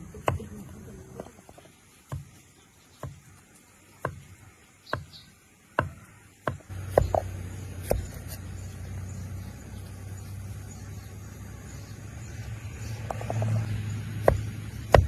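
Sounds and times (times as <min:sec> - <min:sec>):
knife chopping on cutting board: 0:05.8 - 0:08.4.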